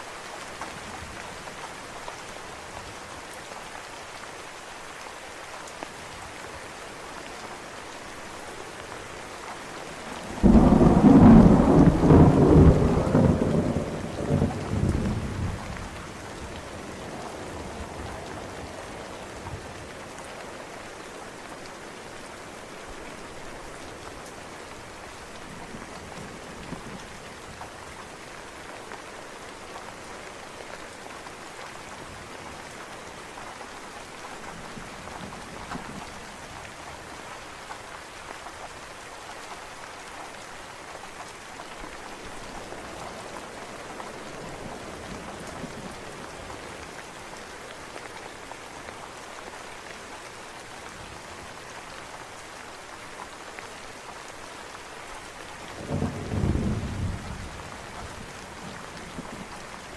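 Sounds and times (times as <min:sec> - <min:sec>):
steady rain falling: 0:00.0 - 0:59.9
thunder rumble: 0:10.4 - 0:15.8.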